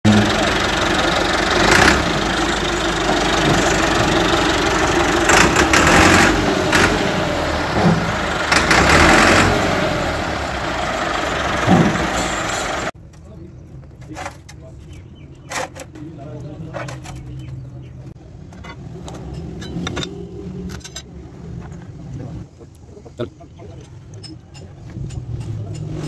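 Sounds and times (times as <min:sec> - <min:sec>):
tractor diesel engine running: 0:00.0 - 0:13.0.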